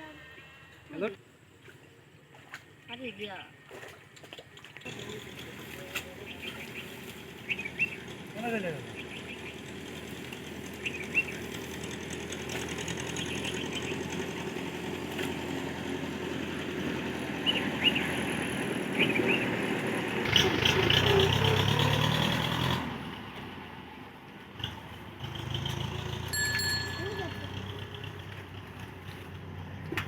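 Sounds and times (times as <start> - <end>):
motor engine running: 4.9 - 22.4, 25.7 - 30.0.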